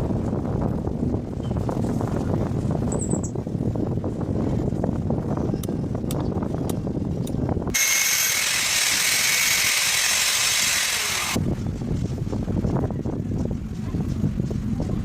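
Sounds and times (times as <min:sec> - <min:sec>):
power tool hiss and whine: 0:07.7 - 0:11.4
power tool rumble: 0:07.7 - 0:11.4.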